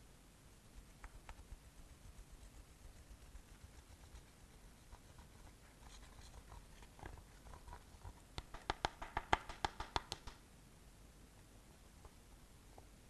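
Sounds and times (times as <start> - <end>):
faint scratching: 0.5 - 8.6.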